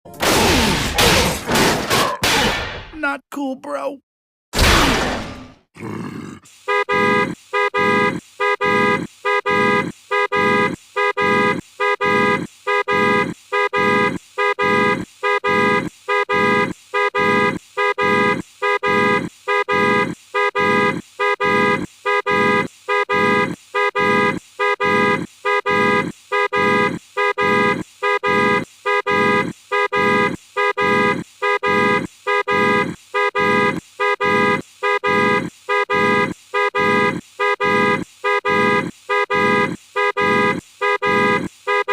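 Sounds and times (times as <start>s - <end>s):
grunting breaths: 5.8s - 6.5s
horn-like honk: 6.6s - 41.9s.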